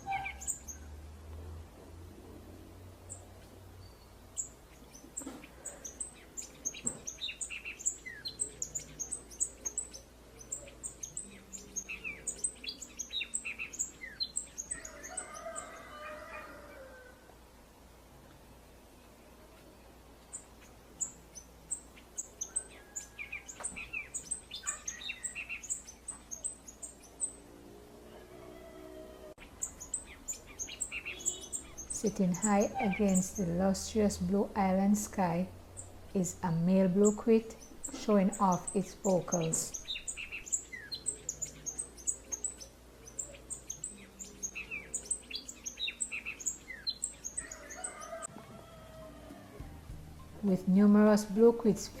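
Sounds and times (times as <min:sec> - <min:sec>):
bird singing high chips: 0:00.0 - 0:00.8, 0:29.6 - 0:33.6
lower bird chirps: 0:00.0 - 0:00.9, 0:03.0 - 0:16.2, 0:20.3 - 0:27.5, 0:29.4 - 0:48.3.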